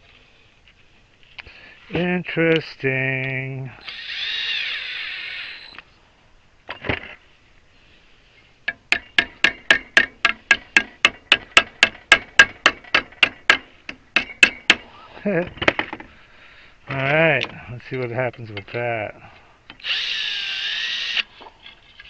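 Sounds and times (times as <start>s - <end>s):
power drill running: 3.8s - 5.8s, 19.8s - 21.4s.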